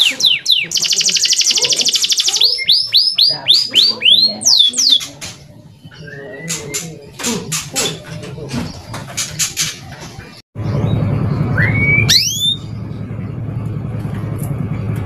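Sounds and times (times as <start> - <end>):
canary singing: 0.0 - 10.3, 11.3 - 12.8.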